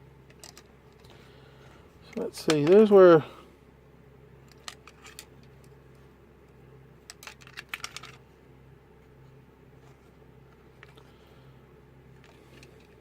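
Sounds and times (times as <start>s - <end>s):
clicks handling plastic parts: 0.2s - 1.2s, 2.0s - 2.9s, 4.4s - 5.8s, 7.0s - 8.2s, 10.5s - 11.1s, 12.2s - 13.0s.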